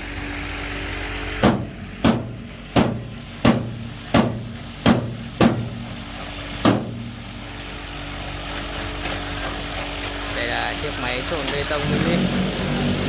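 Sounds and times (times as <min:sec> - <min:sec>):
steady engine hum: 0:00.0 - 0:13.0
sharp rhythmic knocks: 0:01.4 - 0:06.0, 0:06.6 - 0:07.2.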